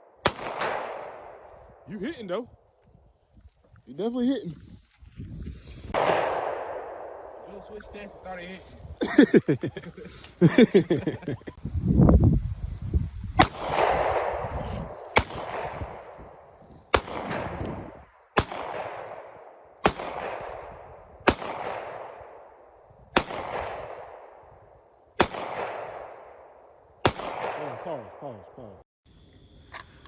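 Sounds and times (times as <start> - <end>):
gunshots with long echo: 0.0 - 2.0, 5.9 - 8.2, 13.4 - 28.8.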